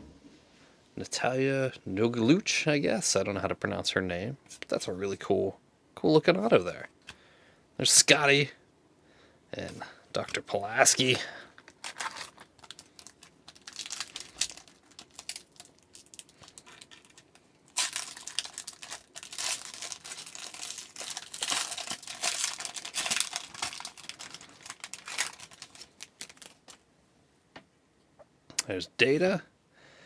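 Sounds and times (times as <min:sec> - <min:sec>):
foil wrapper crinkling and tearing: 0:10.7 - 0:26.8.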